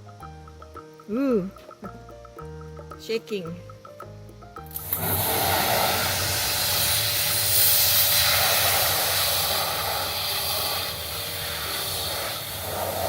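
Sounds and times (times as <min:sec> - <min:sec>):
pressure washer spraying metal: 0:04.7 - 0:13.0.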